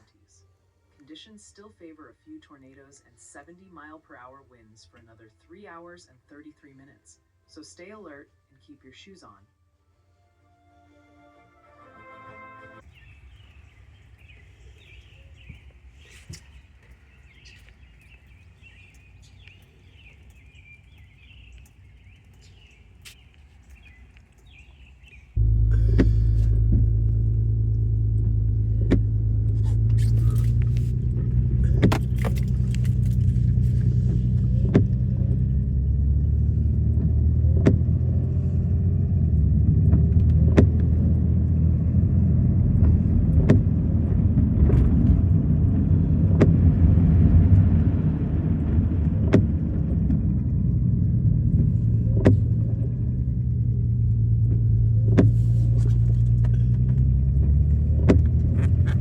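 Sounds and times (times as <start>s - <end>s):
car engine and road rumble: 12.8s - 59.0s.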